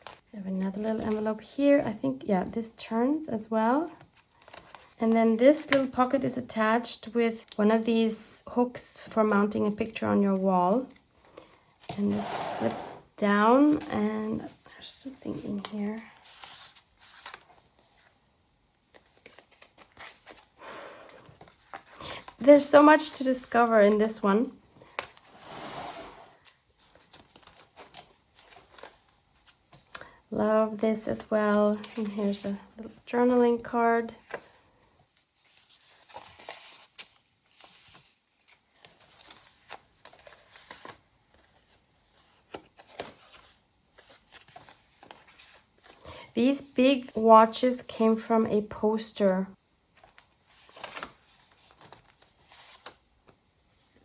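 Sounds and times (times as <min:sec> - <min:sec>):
paper pages rustling and sliding: 0:15.4 - 0:18.2, 0:24.8 - 0:29.9, 0:34.1 - 0:47.7, 0:49.9 - 0:54.0.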